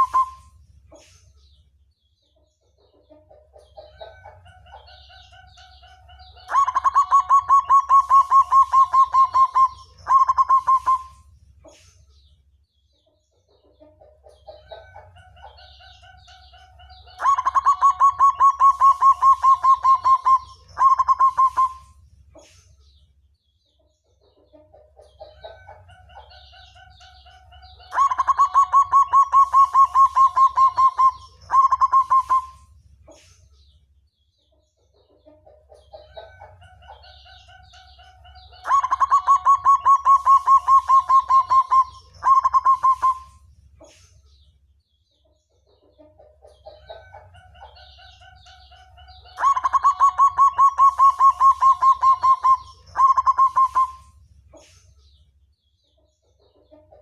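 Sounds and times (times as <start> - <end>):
dove cooing and trilling: 0.0 - 0.5, 4.8 - 11.2, 17.2 - 22.0, 26.6 - 32.7, 36.1 - 43.4, 48.0 - 54.1.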